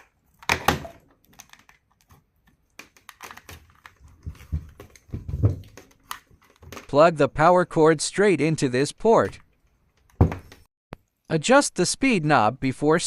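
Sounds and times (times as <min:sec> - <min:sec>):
plastic power adapter handled: 0:00.0 - 0:06.9.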